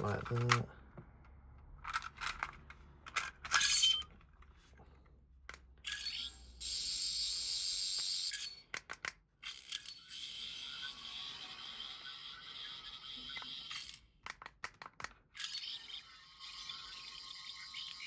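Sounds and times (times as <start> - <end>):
plastic toy clicks: 0.0 - 0.6, 1.8 - 3.8, 8.0 - 10.2, 13.2 - 16.0.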